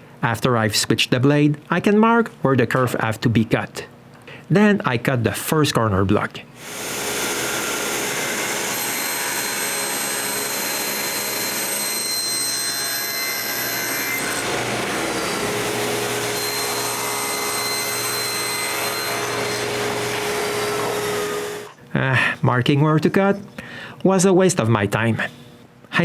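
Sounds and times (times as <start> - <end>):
power saw cutting wood: 6.6 - 21.8.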